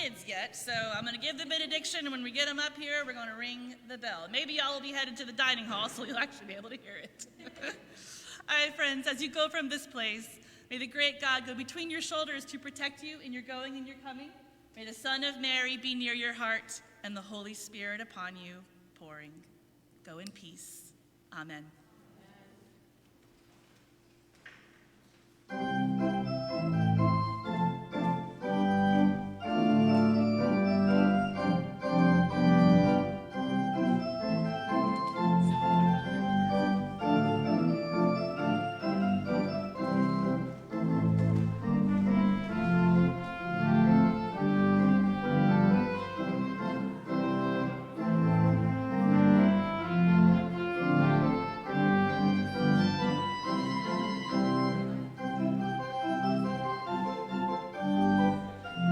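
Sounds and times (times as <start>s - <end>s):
organ playing chords: 25.5s - 58.9s.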